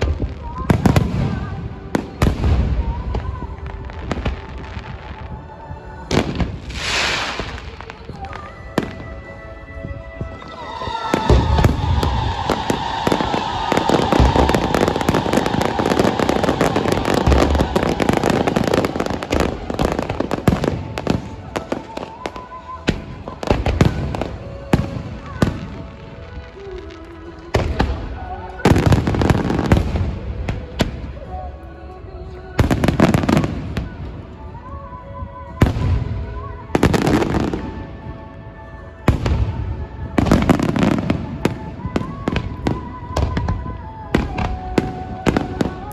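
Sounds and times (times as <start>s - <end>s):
fireworks crackling and popping: 0.0s - 9.2s, 9.8s - 31.5s, 39.0s - 45.9s
fireworks low booms: 0.0s - 31.4s
rumbling echo: 0.0s - 31.4s
fireworks whistle: 6.6s - 9.1s, 10.2s - 24.6s.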